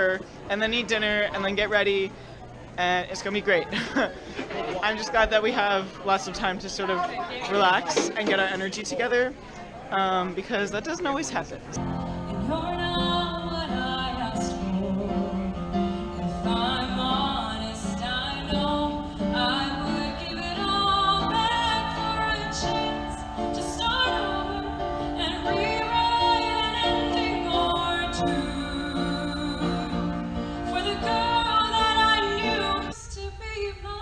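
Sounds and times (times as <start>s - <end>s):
music accompaniment: 11.8s - 33.3s
woman singing: 12.2s - 34.0s.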